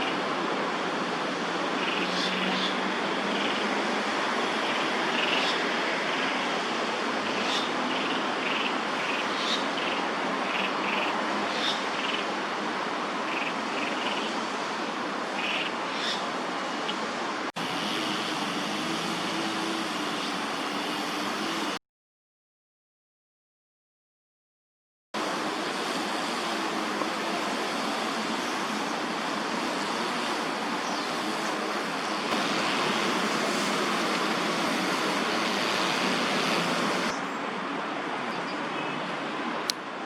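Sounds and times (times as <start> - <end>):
rushing hiss: 25.2 - 37.1
small birds chirping: 30.8 - 32.3.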